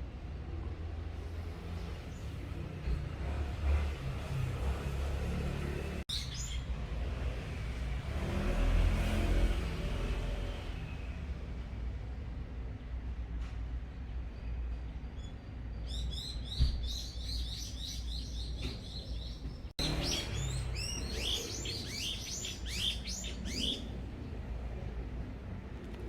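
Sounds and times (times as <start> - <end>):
songbird twittering: 15.2 - 24.0
thump: 16.6 - 16.9.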